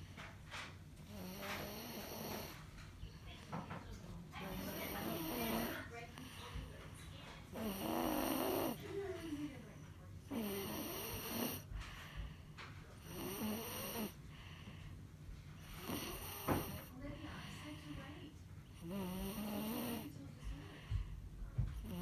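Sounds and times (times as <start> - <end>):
person snoring: 7.6 - 8.8, 13.0 - 14.2.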